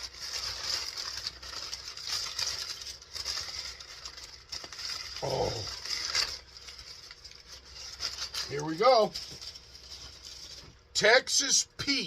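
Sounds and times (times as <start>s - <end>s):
packaging rustling and crinkling: 0.0s - 11.0s
person saying oh: 5.2s - 5.8s.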